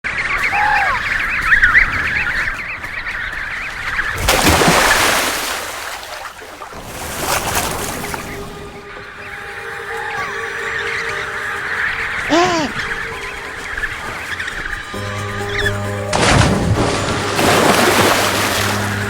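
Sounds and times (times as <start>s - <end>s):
penguin chicks whistling: 0.4s - 4.8s, 9.1s - 16.0s.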